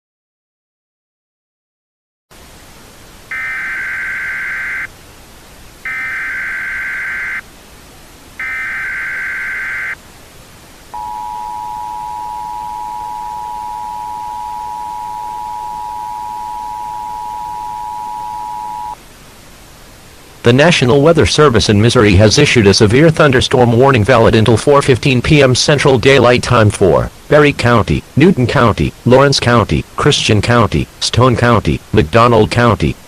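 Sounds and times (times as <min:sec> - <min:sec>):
steady hiss: 0:02.3 - 0:33.0
two-tone attention signal: 0:03.3 - 0:04.9, 0:05.9 - 0:07.4, 0:08.4 - 0:10.0, 0:11.0 - 0:19.0
warbling digital data tones: 0:03.3 - 0:04.9, 0:05.9 - 0:07.4, 0:08.4 - 0:10.0, 0:11.0 - 0:19.0.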